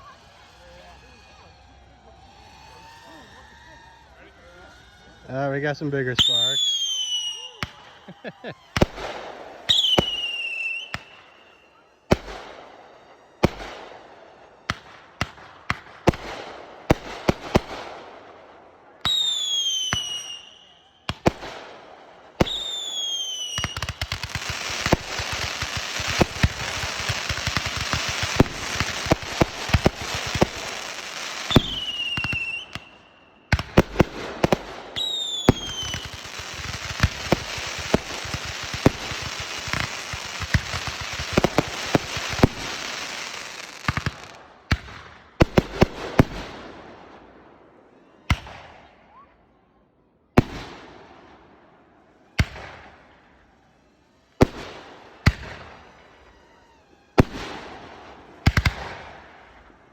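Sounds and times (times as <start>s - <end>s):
dense firework crackling: 0.0s - 47.4s, 50.4s - 59.9s
firework whistles falling in pitch: 0.1s - 12.1s, 19.0s - 21.3s, 22.4s - 44.4s
sharp firework pops: 8.7s - 11.2s, 12.1s - 12.6s, 13.4s - 13.8s, 14.7s - 18.0s, 19.0s - 20.4s, 21.1s - 21.7s, 22.4s - 46.6s, 48.3s - 48.9s, 50.4s - 51.0s, 52.4s - 53.0s, 54.4s - 55.7s, 57.2s - 57.7s, 58.4s - 59.2s.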